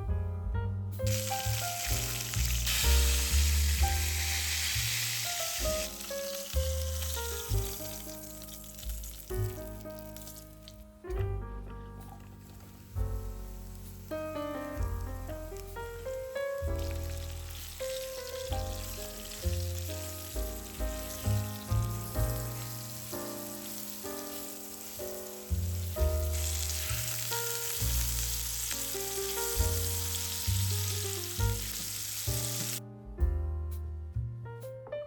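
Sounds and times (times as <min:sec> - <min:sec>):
background music: 0:00.0 - 0:35.0
food sizzling in oil: 0:01.0 - 0:10.8, 0:12.4 - 0:32.8.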